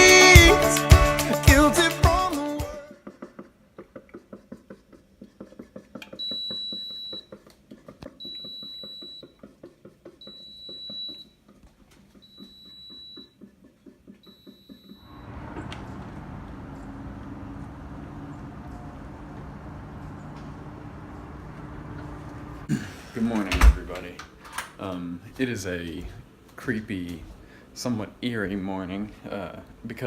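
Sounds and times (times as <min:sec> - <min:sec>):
electronic alarm beeping: 0:06.2 - 0:07.3, 0:08.2 - 0:09.3, 0:10.2 - 0:11.4, 0:12.2 - 0:13.3, 0:14.3 - 0:16.1.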